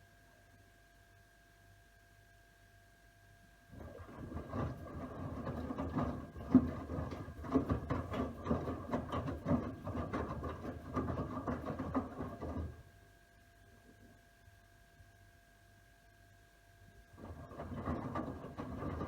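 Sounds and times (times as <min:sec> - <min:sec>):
washing machine churning: 0:03.7 - 0:13.0, 0:17.1 - 0:19.0
laundry thumping in drum: 0:03.8 - 0:12.8.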